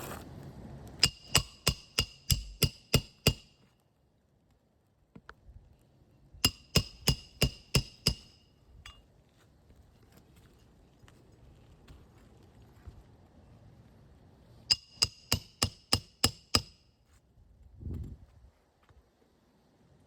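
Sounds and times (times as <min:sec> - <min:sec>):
hammer striking metal: 0:01.0 - 0:03.6, 0:06.4 - 0:09.0, 0:14.7 - 0:16.8.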